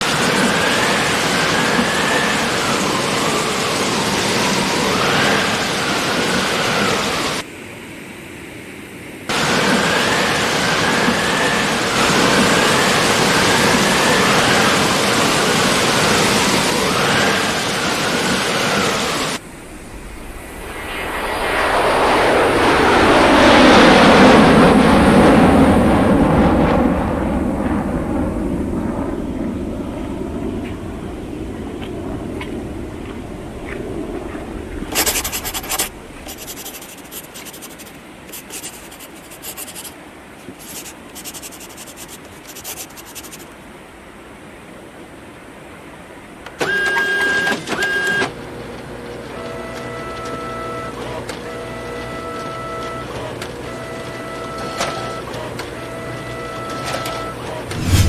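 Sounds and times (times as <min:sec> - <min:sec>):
waterfall rushing: 0:09.3 - 0:20.8.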